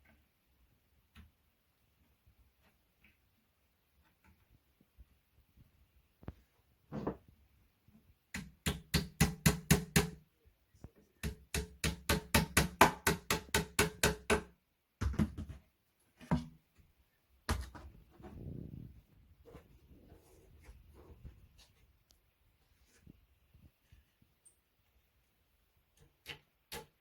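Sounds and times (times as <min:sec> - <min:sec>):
hammer tapping on wood: 0:08.4 - 0:10.2, 0:11.2 - 0:15.4.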